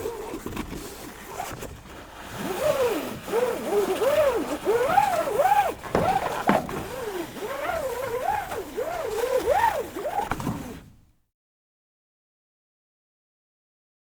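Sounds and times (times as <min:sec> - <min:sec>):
background noise: 0:00.0 - 0:11.3.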